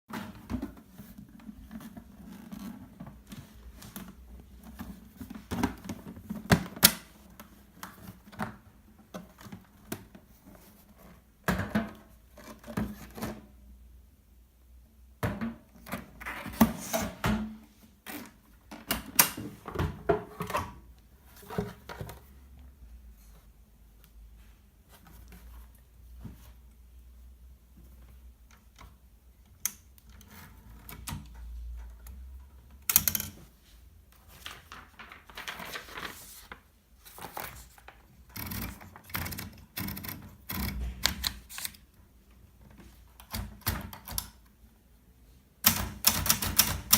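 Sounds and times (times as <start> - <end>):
typewriter clacking: 45.6 - 46.9.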